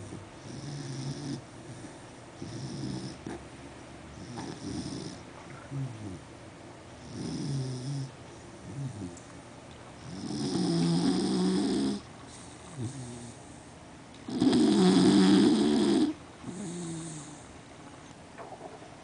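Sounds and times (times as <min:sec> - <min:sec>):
dog snoring: 0:00.0 - 0:03.4, 0:04.2 - 0:06.3, 0:07.0 - 0:09.2, 0:10.0 - 0:13.6, 0:14.2 - 0:17.5.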